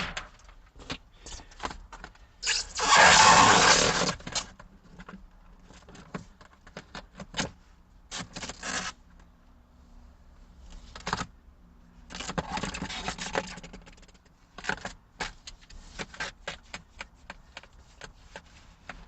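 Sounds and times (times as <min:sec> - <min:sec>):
backing paper ripping off: 0:02.5 - 0:04.2.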